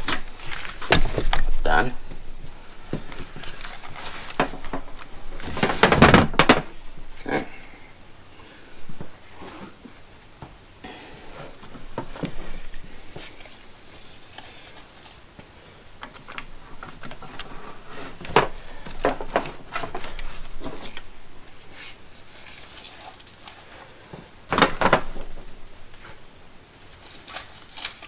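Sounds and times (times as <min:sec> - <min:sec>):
fabric bag rustling: 0:00.0 - 0:07.2.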